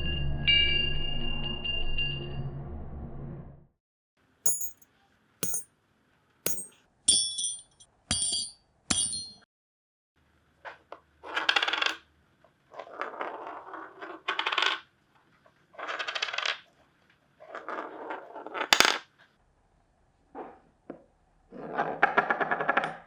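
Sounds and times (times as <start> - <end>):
metal ring spinning and clinking: 4.5 - 4.8, 5.4 - 5.6, 6.5 - 9.4.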